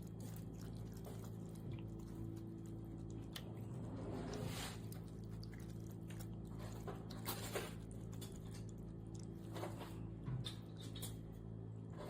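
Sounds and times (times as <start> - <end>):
cat lapping water: 0.0 - 9.4.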